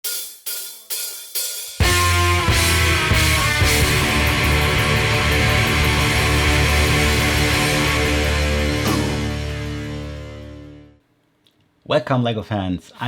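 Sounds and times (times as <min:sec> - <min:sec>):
rock drums: 0:00.0 - 0:10.9
distorted electric guitar: 0:01.8 - 0:11.0.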